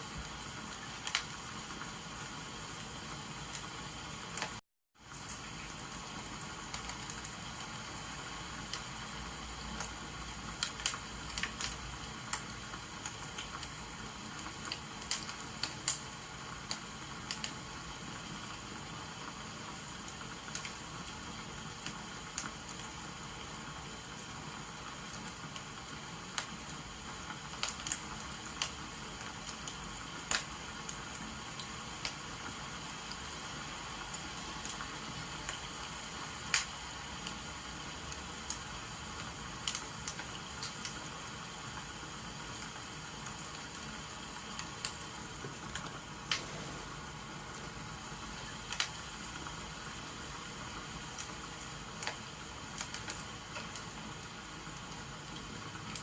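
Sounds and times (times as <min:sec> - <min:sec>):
rain hissing: 0:00.0 - 0:56.0
wood fire crackling: 0:00.0 - 0:56.0.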